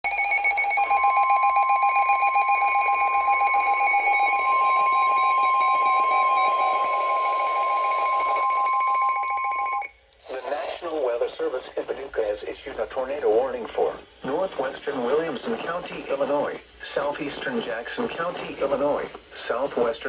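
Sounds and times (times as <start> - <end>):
emergency alert tone: 0.0 - 9.9
pulsing beep: 0.0 - 9.9.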